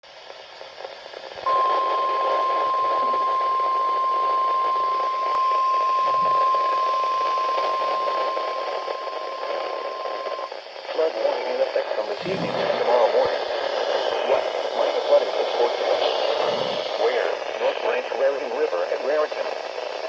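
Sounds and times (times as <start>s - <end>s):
radio static hiss: 0.1s - 20.0s
steady warning alarm tone: 1.5s - 10.5s.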